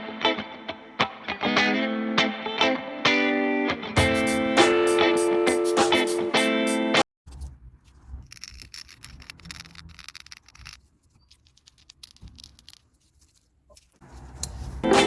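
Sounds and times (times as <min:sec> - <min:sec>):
music: 0:00.0 - 0:07.0
packaging crinkling and rustling: 0:07.9 - 0:14.0.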